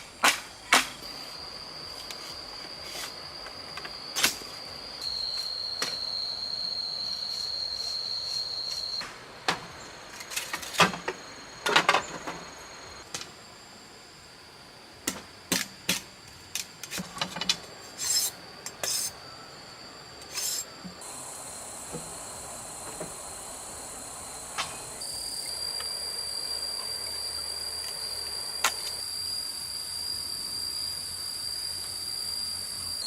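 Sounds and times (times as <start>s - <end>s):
steady hiss: 0.0s - 33.0s.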